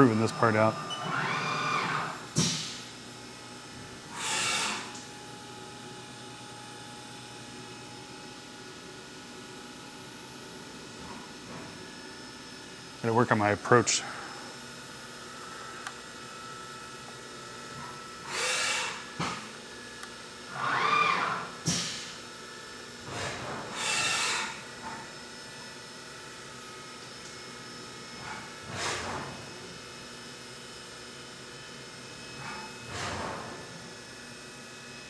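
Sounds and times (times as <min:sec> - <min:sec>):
drill cutting bursts: 0:00.0 - 0:02.3, 0:04.1 - 0:04.9, 0:18.3 - 0:19.0, 0:20.5 - 0:21.5, 0:23.8 - 0:24.6
steady machine hum: 0:00.0 - 0:20.6.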